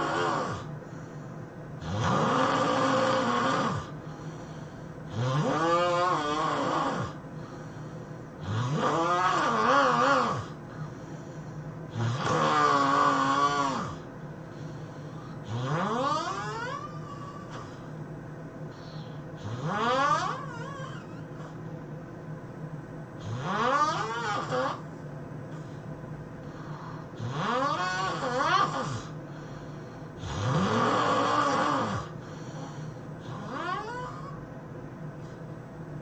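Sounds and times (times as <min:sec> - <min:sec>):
person snoring loudly: 0:00.0 - 0:00.8, 0:01.8 - 0:04.0, 0:05.1 - 0:07.6, 0:08.4 - 0:10.9, 0:11.9 - 0:14.1, 0:15.4 - 0:17.8, 0:18.8 - 0:21.6, 0:23.2 - 0:24.9, 0:26.5 - 0:29.2, 0:30.2 - 0:34.4
steady low hum: 0:00.0 - 0:36.0.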